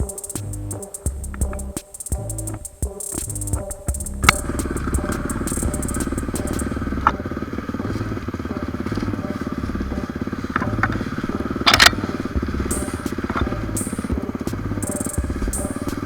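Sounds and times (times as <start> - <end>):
motorcycle engine running: 3.4 - 16.0.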